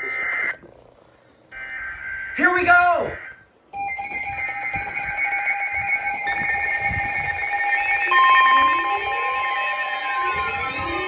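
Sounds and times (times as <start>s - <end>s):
steady electronic alert tones: 3.0s - 11.0s.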